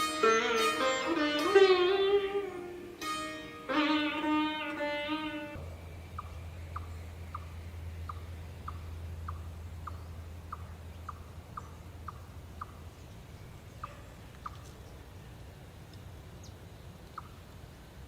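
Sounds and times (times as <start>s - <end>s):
sitar music: 0.0s - 6.6s
low steady hum: 0.0s - 18.0s.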